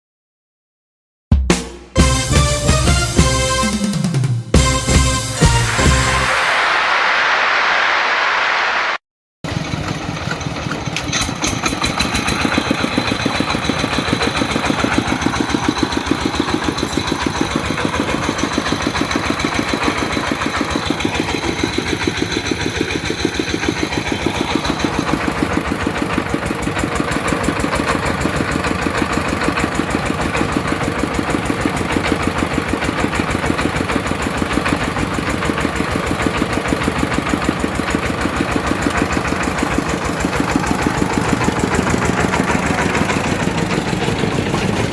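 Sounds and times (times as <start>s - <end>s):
drilling rig engine running: 2.0s - 8.9s, 9.5s - 44.9s
thin high whine: 4.8s - 9.0s.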